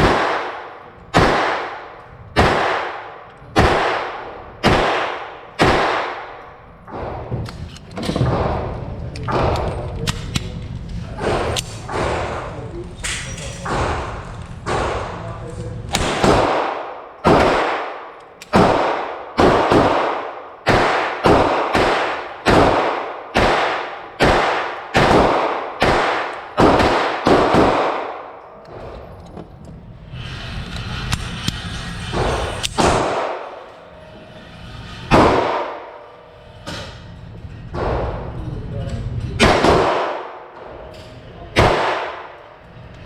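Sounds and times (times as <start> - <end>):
pistol shots echoing: 0.0 - 6.4, 15.9 - 28.4, 39.4 - 40.6, 41.6 - 42.4.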